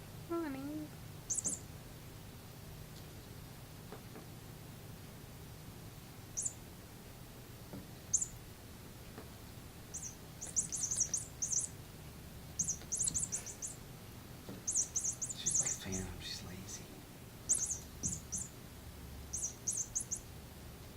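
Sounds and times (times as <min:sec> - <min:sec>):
cat chirping squeaks: 0:01.3 - 0:01.7, 0:06.3 - 0:06.6, 0:08.1 - 0:08.4, 0:09.9 - 0:11.8, 0:12.5 - 0:13.8, 0:14.5 - 0:16.0, 0:17.4 - 0:18.6, 0:19.2 - 0:20.4.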